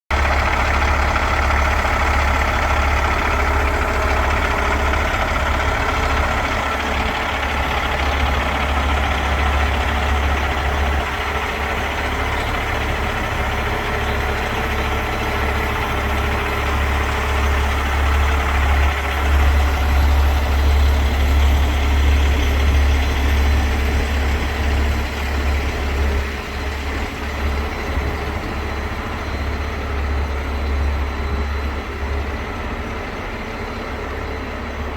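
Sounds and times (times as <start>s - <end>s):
diesel engine idling: 0.1s - 34.9s.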